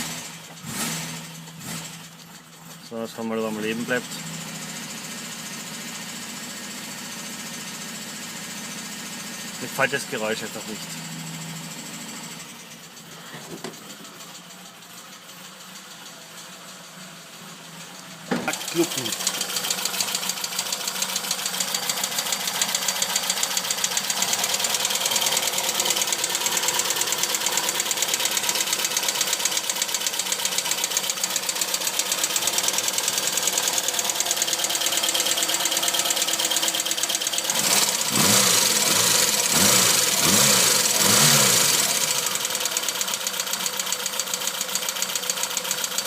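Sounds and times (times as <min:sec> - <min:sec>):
engine revving: 0:00.0 - 0:02.2, 0:18.4 - 0:43.7
engine running with fast ticking: 0:00.0 - 0:46.0.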